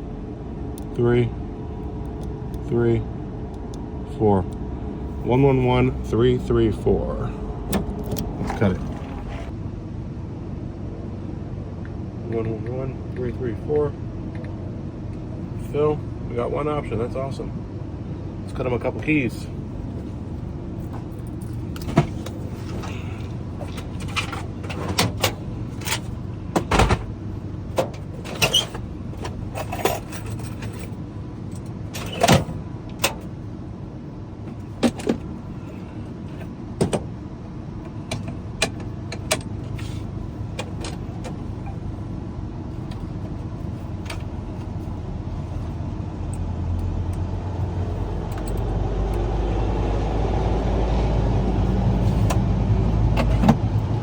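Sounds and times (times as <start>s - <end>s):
deep motor hum: 0.0s - 54.0s
steady low hum: 0.0s - 54.0s
metallic clatter of keys and tools: 28.2s - 32.5s.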